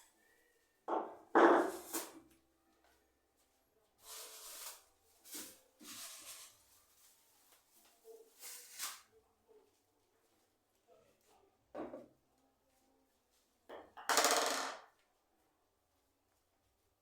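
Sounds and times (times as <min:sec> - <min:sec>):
faint rustling handling noise: 0:01.8 - 0:13.6.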